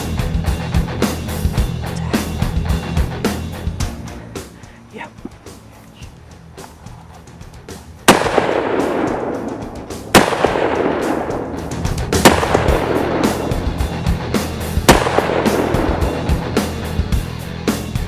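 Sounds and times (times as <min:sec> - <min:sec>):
rifle shots with rolling echo: 0:08.0 - 0:17.0.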